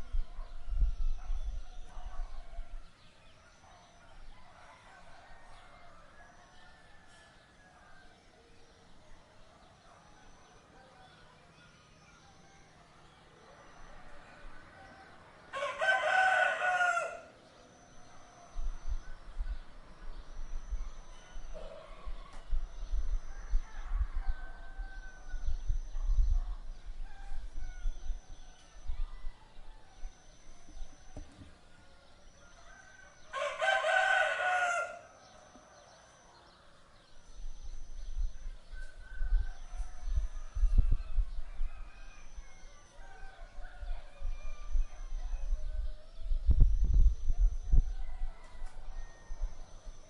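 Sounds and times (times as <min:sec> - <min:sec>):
rooster crowing: 0:04.4 - 0:08.1, 0:14.0 - 0:17.4, 0:23.3 - 0:25.7, 0:32.4 - 0:36.0, 0:38.7 - 0:45.8, 0:47.7 - 0:50.0.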